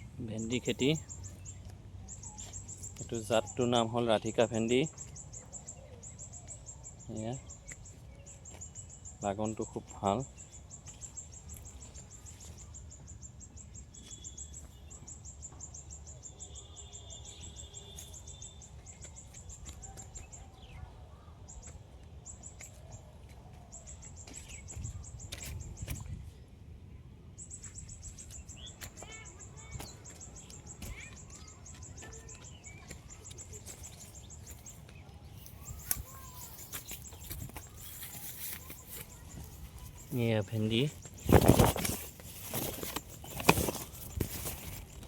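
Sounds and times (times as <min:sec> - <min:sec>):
wind rumble on microphone: 0:24.7 - 0:26.4.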